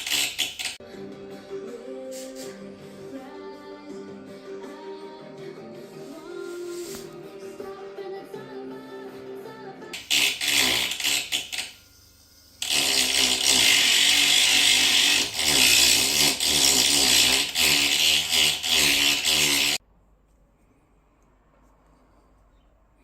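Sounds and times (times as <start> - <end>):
power tool grinding glass: 0.0 - 0.8, 10.0 - 11.9, 12.6 - 19.8.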